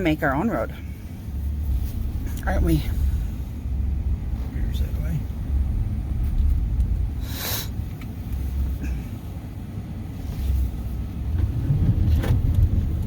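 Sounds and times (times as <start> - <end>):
truck engine and tyres rumbling: 0.0 - 13.0
brief hiss: 7.2 - 7.8.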